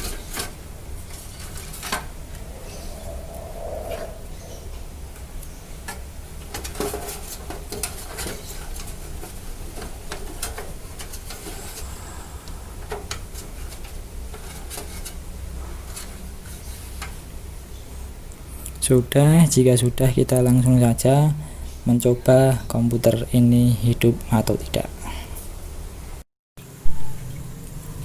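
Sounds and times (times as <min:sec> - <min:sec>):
low hum: 0:01.8 - 0:05.8, 0:11.4 - 0:14.2.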